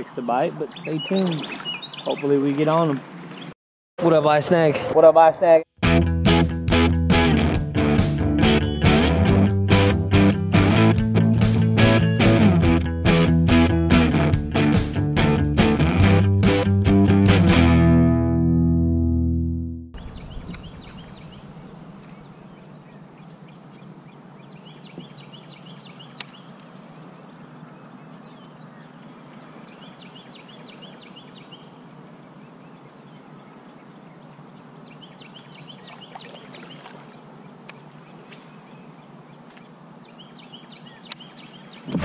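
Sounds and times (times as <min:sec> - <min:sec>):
songbird trilling: 0:00.6 - 0:02.3, 0:20.0 - 0:31.8, 0:34.8 - 0:37.1, 0:39.9 - 0:42.0
low outdoor background noise: 0:20.2 - 0:41.9.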